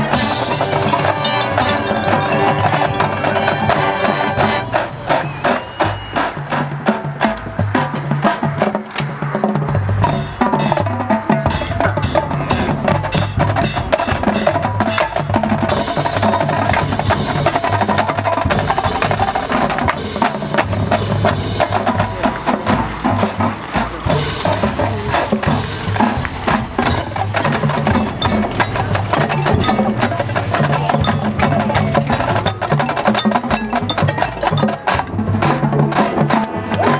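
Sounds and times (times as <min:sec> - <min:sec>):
band music: 0:00.0 - 0:09.0, 0:10.0 - 0:36.9
loud busy drums: 0:00.0 - 0:36.9
wood-block-like clicks: 0:11.5 - 0:36.6.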